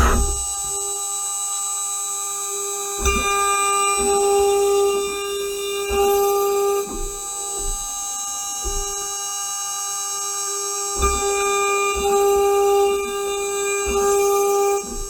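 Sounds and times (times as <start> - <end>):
low thuds of cutter: 0.0 - 0.7
router spindle whining: 0.0 - 0.8.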